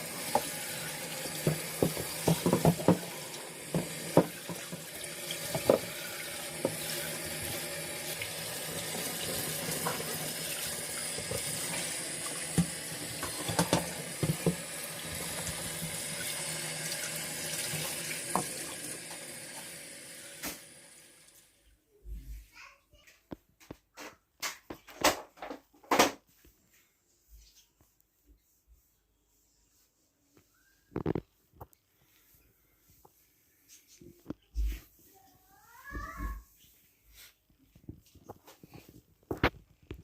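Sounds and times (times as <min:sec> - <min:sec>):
tap water running into sink: 0:00.0 - 0:21.4
dishes knocking and clattering: 0:01.4 - 0:06.0, 0:12.5 - 0:14.6.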